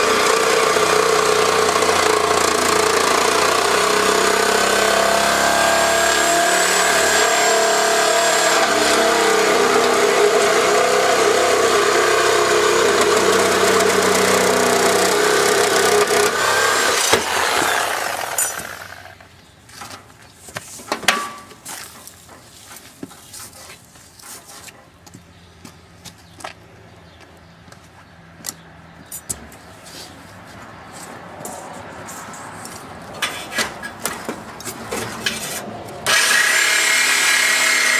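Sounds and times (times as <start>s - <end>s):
power tool cutting metal: 0.0s - 19.3s, 35.4s - 37.9s
metal parts clanking and rattling: 17.0s - 19.2s.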